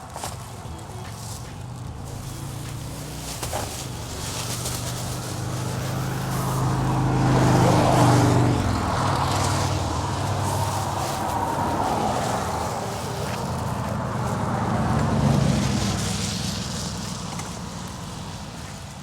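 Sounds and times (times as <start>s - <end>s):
vehicle engine humming: 0.0s - 19.0s
heavy rain hiss: 2.0s - 19.0s.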